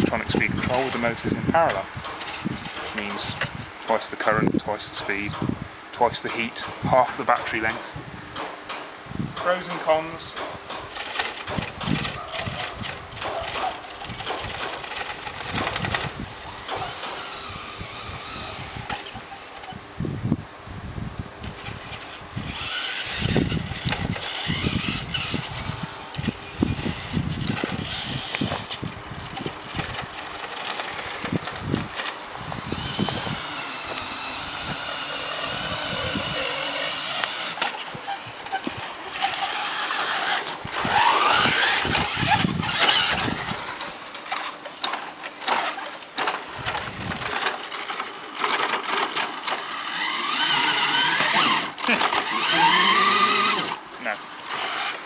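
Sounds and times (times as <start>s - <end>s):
electric motors whining: 0.0s - 20.4s, 21.3s - 55.0s
toy truck chassis rattling: 10.4s - 19.7s, 21.5s - 53.8s, 54.4s - 55.0s.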